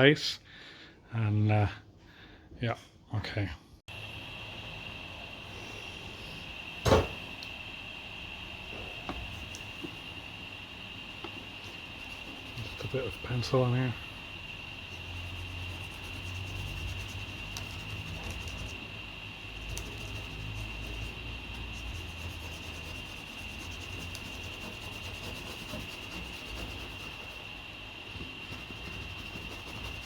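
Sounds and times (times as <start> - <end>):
faint high whine: 3.9 - 30.0
pencil scraping on paper: 14.9 - 18.8, 19.6 - 27.4, 28.4 - 30.0.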